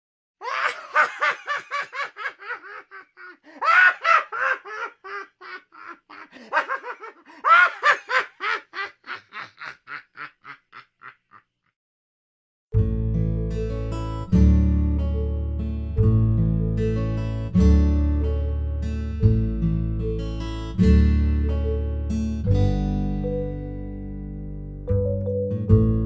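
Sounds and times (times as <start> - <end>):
man laughing crazily: 0.4 - 11.6.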